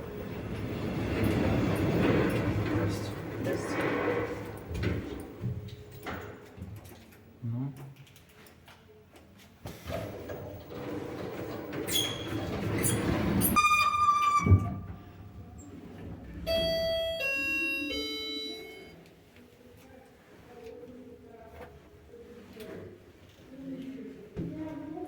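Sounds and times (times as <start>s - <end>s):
elevator doors sliding with squeal: 0.3s - 4.7s, 10.0s - 15.7s, 16.5s - 18.9s
three-note electronic chime: 16.5s - 18.9s.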